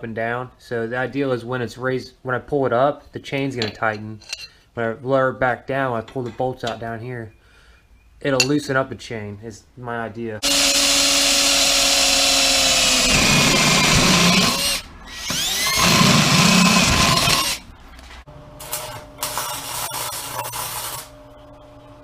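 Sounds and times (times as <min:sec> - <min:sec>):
power drill boring through steel: 0:10.4 - 0:17.6.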